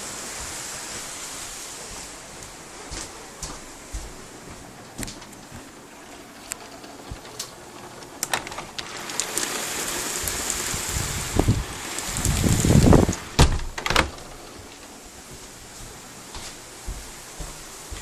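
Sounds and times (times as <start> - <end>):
heavy rain falling: 0.0 - 3.4, 6.4 - 15.2
close rain drop ticks: 6.4 - 13.3.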